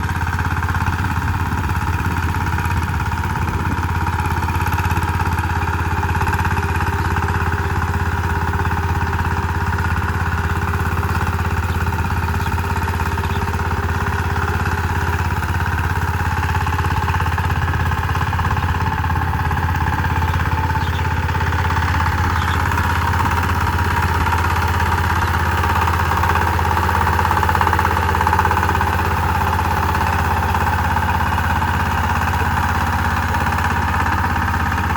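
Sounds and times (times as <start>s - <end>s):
power tiller engine running: 0.0s - 34.9s.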